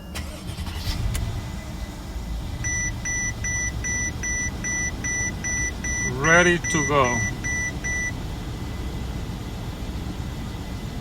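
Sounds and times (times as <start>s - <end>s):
car engine running: 0.0s - 11.0s
dashboard warning chime beeping: 1.8s - 8.3s.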